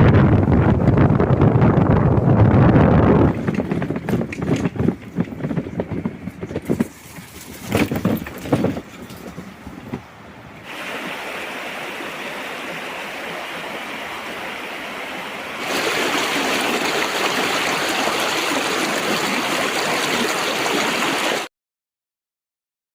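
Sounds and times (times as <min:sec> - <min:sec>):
waterfall roaring: 0:10.6 - 0:21.5.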